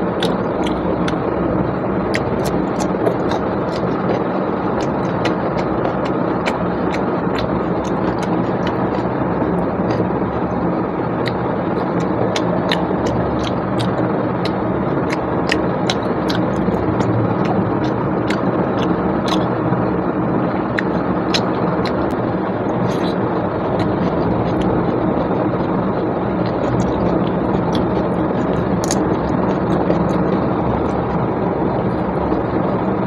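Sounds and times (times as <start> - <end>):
person chewing with wet mouth clicks: 0.0 - 1.2, 2.0 - 10.0, 11.2 - 19.5, 20.7 - 22.1, 22.8 - 23.2, 23.8 - 24.8, 26.4 - 31.1
loud background rumble: 0.0 - 33.0.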